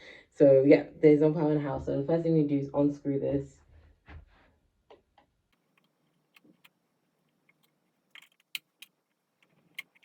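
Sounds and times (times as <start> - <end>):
sharp metallic clicks: 5.6 - 10.0
screwdriver clicks and scrapes: 7.4 - 10.0.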